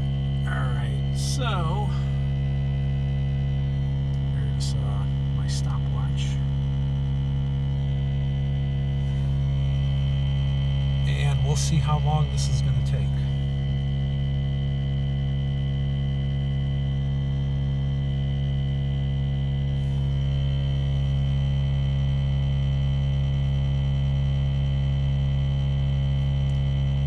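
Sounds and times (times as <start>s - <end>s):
air compressor running: 0.0s - 25.4s.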